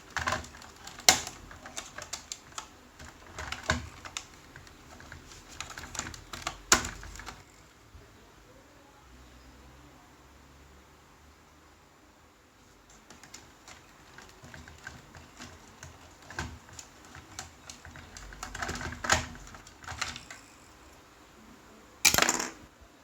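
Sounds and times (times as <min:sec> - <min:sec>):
toy cars clattering: 0:00.0 - 0:07.5, 0:13.0 - 0:20.8, 0:22.1 - 0:22.7
toy cars clicking and tapping: 0:00.0 - 0:07.5, 0:13.0 - 0:20.5.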